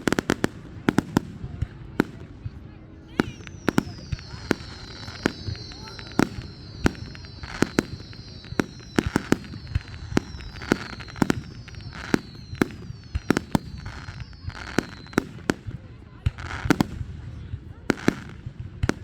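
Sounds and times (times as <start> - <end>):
firework crackling: 0.0 - 19.0
high-pitched falling whistles: 3.2 - 15.4
firework shells bursting: 3.2 - 15.7.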